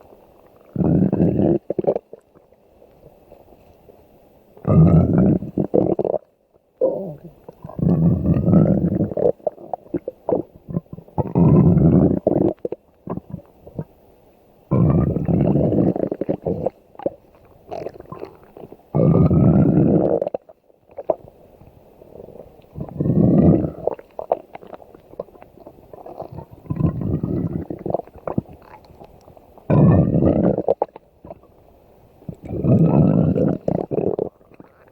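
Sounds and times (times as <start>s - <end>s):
stomach growling: 0.0s - 3.2s, 4.6s - 14.0s, 14.7s - 31.6s, 32.2s - 34.9s
small squelches and clicks: 28.5s - 29.6s.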